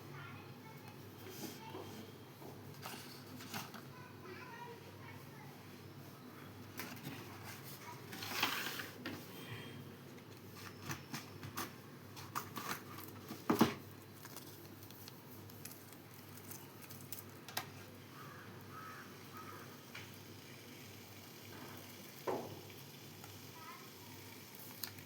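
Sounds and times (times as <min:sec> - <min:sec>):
packaging clicks and rustling: 0:10.4 - 0:17.8, 0:24.6 - 0:25.0.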